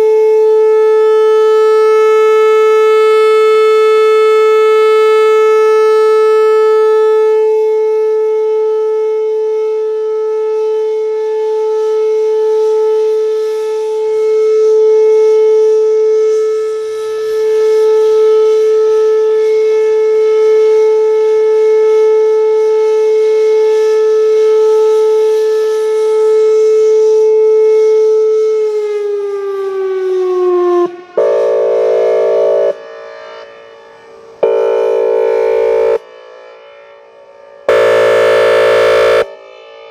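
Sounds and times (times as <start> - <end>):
air horn blast: 31.2 - 32.8, 34.4 - 36.0, 37.7 - 39.3
warning siren alert tone: 34.4 - 36.0, 37.7 - 39.3.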